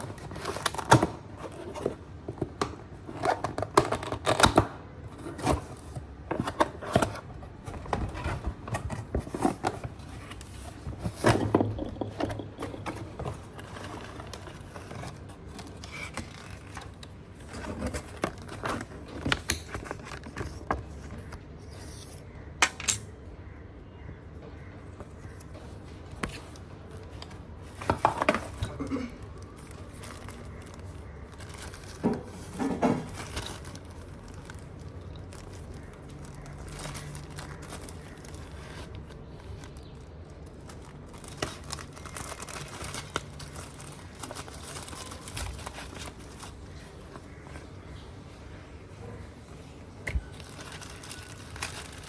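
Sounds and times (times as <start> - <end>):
plastic parts clattering: 5.2 - 21.3, 27.0 - 47.3
packaging crinkling: 26.2 - 47.9, 49.9 - 52.0.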